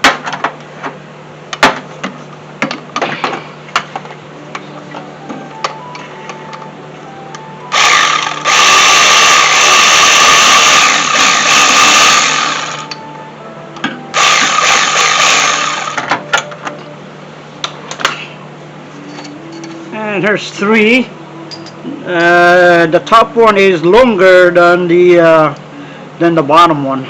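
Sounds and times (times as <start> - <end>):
power tool running: 7.7 - 13.0, 14.1 - 16.2.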